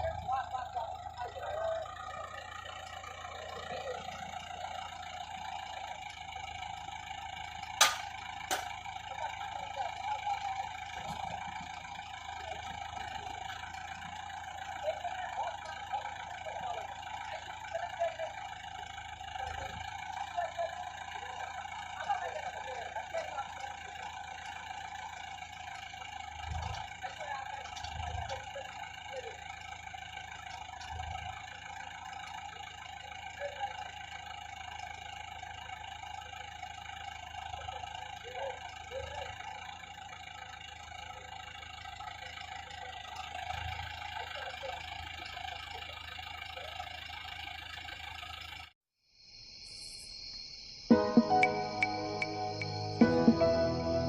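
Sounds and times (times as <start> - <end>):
faint voices: 0.0 - 2.4, 9.0 - 11.6, 19.3 - 24.1
engine whining: 0.0 - 48.7, 50.9 - 54.0.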